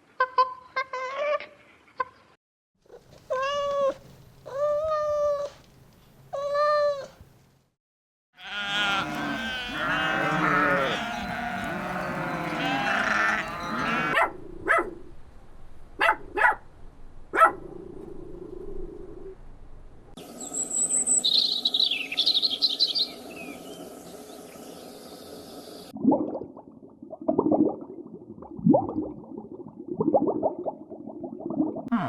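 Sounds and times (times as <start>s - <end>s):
animals bleating: 8.4s - 14.2s.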